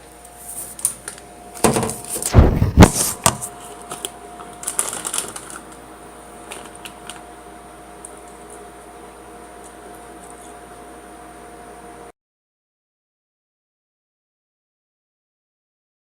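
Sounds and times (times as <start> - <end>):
microwave oven humming: 0.0 - 12.2.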